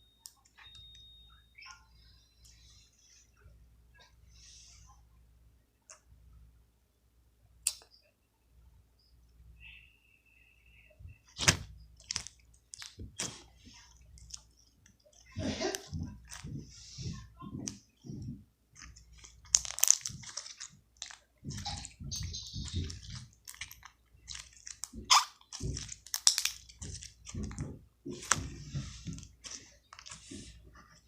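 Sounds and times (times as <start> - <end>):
slime squelching: 11.2 - 31.0.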